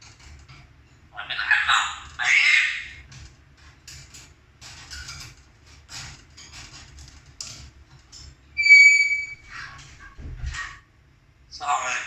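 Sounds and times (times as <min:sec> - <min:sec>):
bird chirping and whistling: 0:08.6 - 0:09.4.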